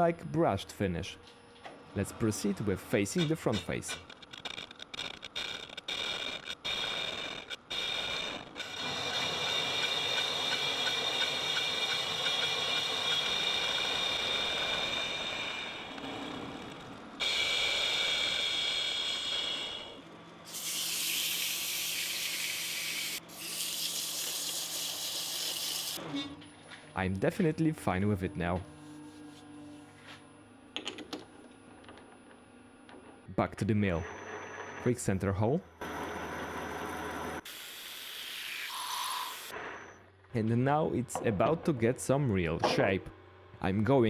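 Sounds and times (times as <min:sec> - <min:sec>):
metal lathe cutting metal: 0:08.6 - 0:16.0, 0:20.5 - 0:26.0.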